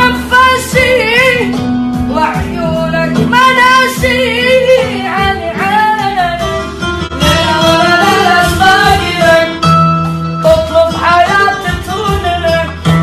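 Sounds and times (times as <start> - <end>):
instrumental accompaniment: 0.0 - 13.0.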